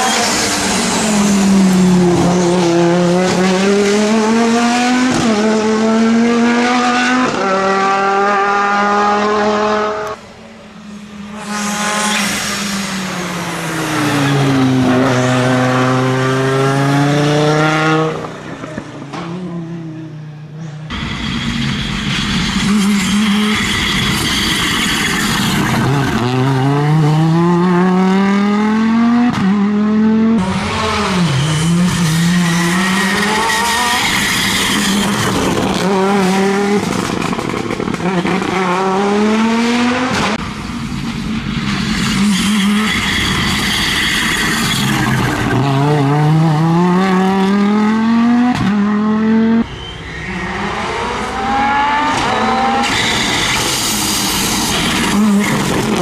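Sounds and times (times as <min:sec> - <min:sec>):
rally car engine revving: 0:00.0 - 0:10.2, 0:11.3 - 0:19.5, 0:25.5 - 0:40.5, 0:44.5 - 0:49.7, 0:50.3 - 0:56.0.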